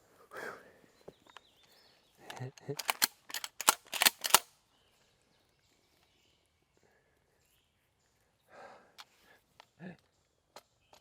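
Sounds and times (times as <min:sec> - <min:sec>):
sharp clicks and knocks: 0:02.8 - 0:04.4.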